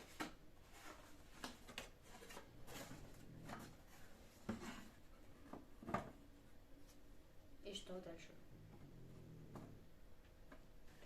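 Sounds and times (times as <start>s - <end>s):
soft rubbing and scraping: 0.0s - 5.4s.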